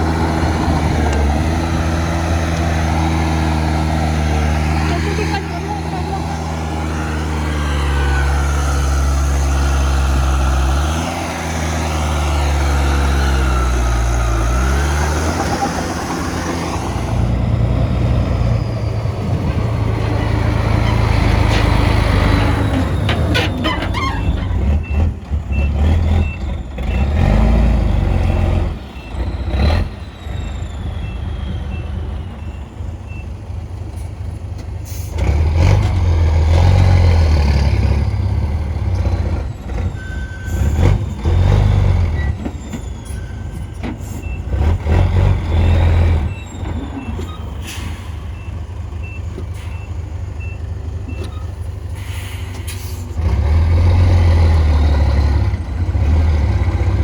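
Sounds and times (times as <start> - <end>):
diesel machinery engine revving: 0.0 - 57.0
reversing beeper: 30.0 - 33.4.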